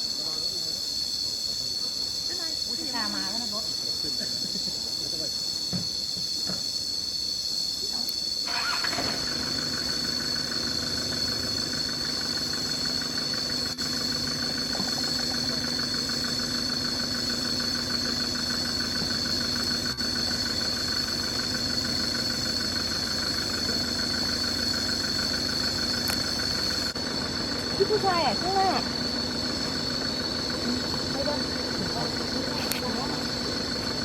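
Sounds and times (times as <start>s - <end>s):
high-pitched insect drone: 0.0s - 34.0s
vehicle engine starting and idling: 8.4s - 34.0s.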